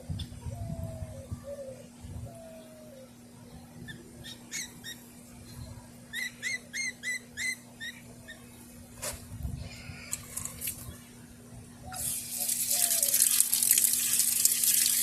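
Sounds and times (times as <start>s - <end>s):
steady low hum: 0.0s - 15.0s
baby birds cheeping: 6.1s - 8.4s.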